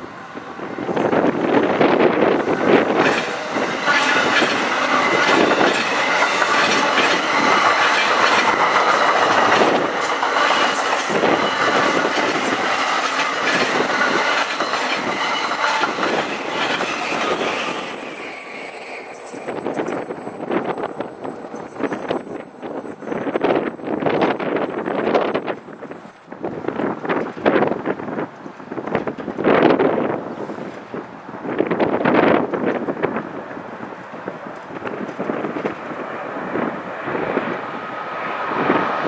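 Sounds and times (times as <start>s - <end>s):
faint high squeal: 3.2s - 26.2s.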